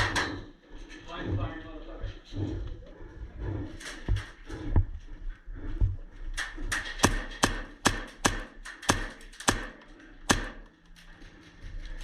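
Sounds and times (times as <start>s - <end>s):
airsoft gunfire cracks: 6.7s - 10.6s.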